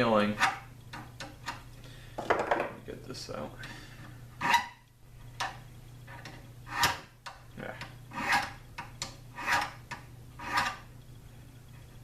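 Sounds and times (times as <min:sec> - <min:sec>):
hand file rasping on brass: 0:06.6 - 0:07.1, 0:08.1 - 0:10.9.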